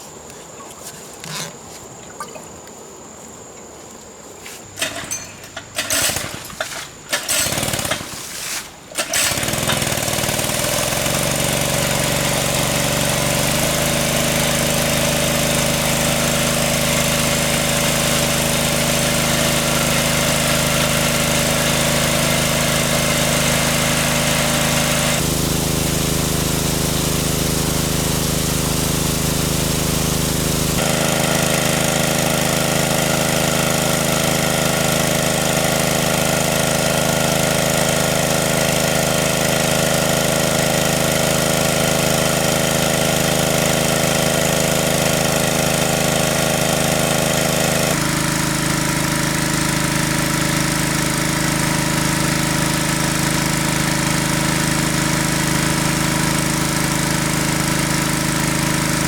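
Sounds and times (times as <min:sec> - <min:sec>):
water pump engine droning: 0:01.2 - 0:02.6, 0:04.7 - 0:59.0.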